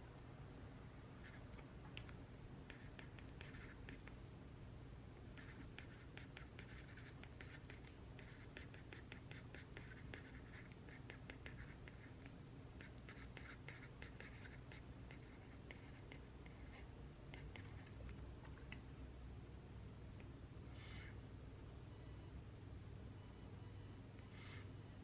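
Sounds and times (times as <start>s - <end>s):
low room hum: 0.0s - 25.0s
pen scratching on paper: 1.2s - 1.4s, 2.7s - 4.1s, 5.4s - 12.2s, 12.8s - 17.9s.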